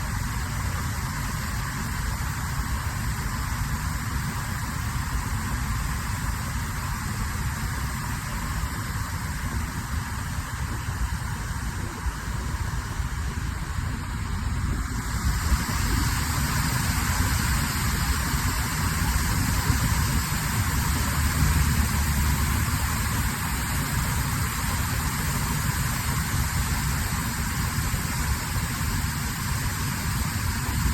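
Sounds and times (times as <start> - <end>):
water rushing over dam: 4.9 - 30.9
deep rumble: 10.6 - 24.8.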